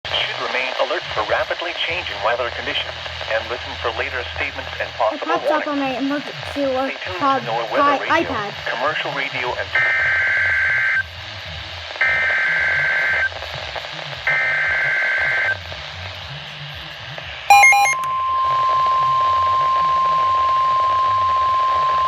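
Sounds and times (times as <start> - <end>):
short electronic chirp: 17.5 - 18.6
steady warning alert tone: 17.5 - 19.3
rasping data-tone bursts: 17.5 - 22.0.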